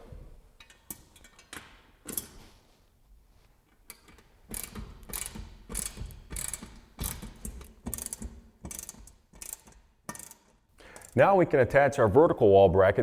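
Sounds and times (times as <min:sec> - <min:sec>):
socket ratchet clicking: 0:03.9 - 0:11.2.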